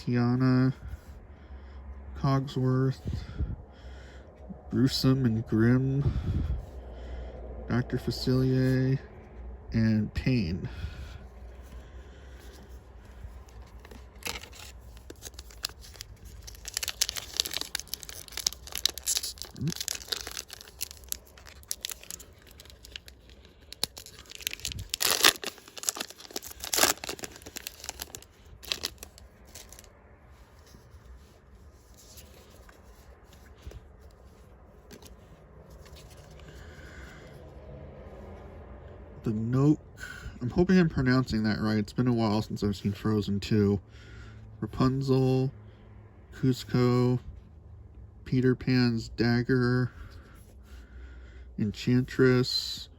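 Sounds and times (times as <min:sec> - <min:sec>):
foil wrapper tearing and crinkling: 0:13.7 - 0:29.9.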